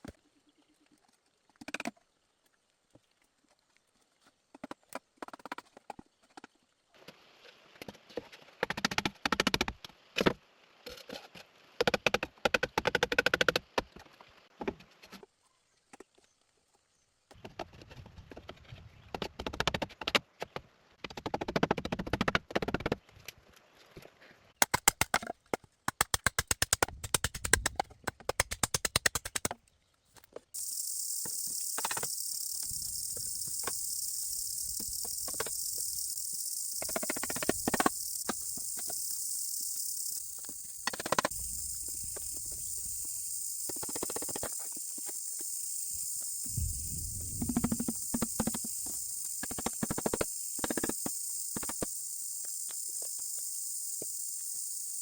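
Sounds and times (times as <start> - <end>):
high-pitched insect buzz: 30.6 - 55.0.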